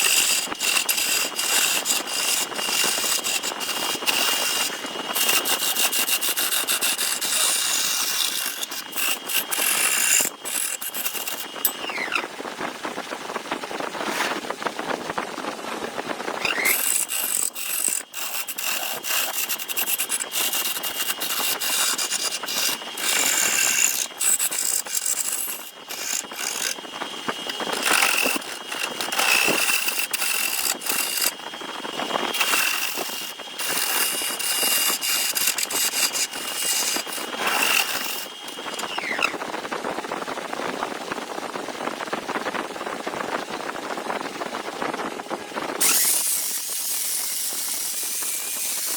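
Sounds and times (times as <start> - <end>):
power tool motor whining: 0.0 - 12.3, 16.4 - 39.4, 45.8 - 48.9
tool scraping wood: 0.0 - 12.3, 14.0 - 14.4, 16.4 - 31.4, 32.0 - 39.4, 45.8 - 48.9.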